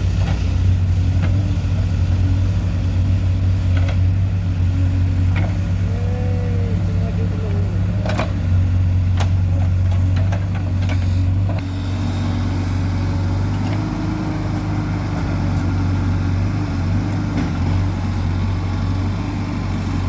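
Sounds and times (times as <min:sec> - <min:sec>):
tractor diesel engine running: 0:00.0 - 0:20.0.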